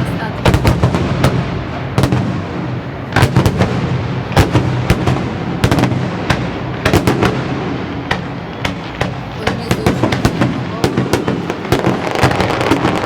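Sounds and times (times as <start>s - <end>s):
echoing rumble of detonations: 0.0s - 13.0s
firework shells bursting: 3.1s - 13.0s.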